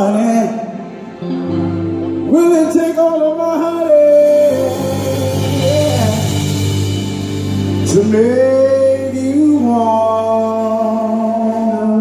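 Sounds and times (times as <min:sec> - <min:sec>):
man singing long wordless notes: 0:00.0 - 0:01.0, 0:02.2 - 0:12.0
live band backing: 0:00.0 - 0:12.0
steady bass: 0:01.6 - 0:12.0.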